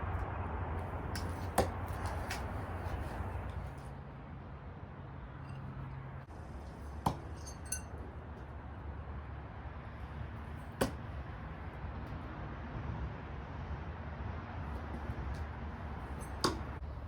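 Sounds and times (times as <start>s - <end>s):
throwing knife metallic knocks: 1.2s - 3.2s, 6.6s - 8.1s, 10.7s - 11.1s, 16.1s - 16.8s
ringing clink: 7.1s - 7.9s.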